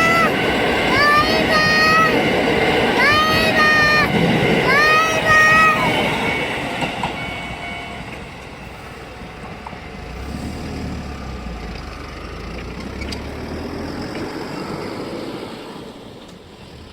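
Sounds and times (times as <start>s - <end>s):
outdoor background noise: 0.0s - 16.9s
passing vehicle engine rumble: 8.8s - 16.9s.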